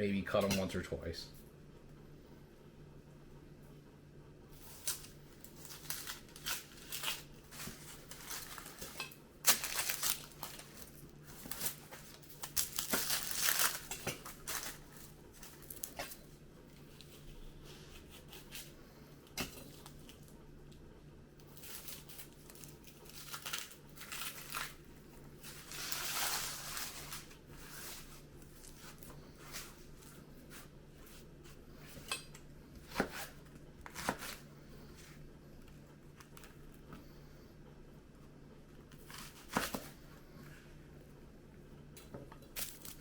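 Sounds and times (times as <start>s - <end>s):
faint low hum: 0.0s - 43.0s
shallot skins crinkling and tearing: 4.6s - 17.2s, 21.4s - 30.1s.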